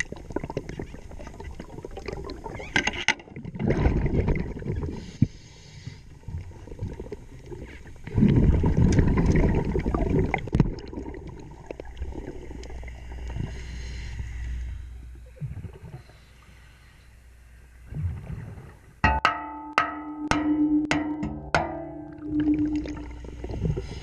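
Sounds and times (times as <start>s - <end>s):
underwater bubbles gurgling: 0.0s - 5.4s, 6.1s - 14.0s, 15.0s - 16.2s, 21.9s - 24.0s
faint hiss: 12.3s - 19.0s
sharp knocks: 19.0s - 22.1s.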